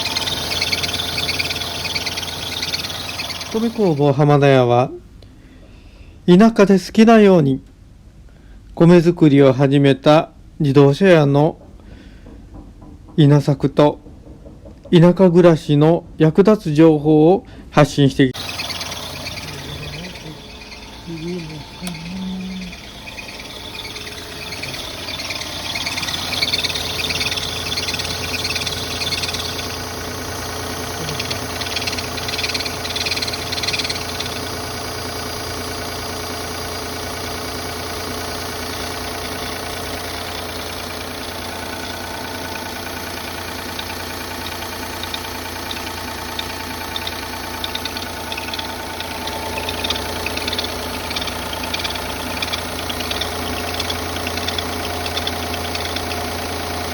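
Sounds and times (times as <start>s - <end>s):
car engine idling: 0.0s - 4.2s, 18.4s - 56.9s.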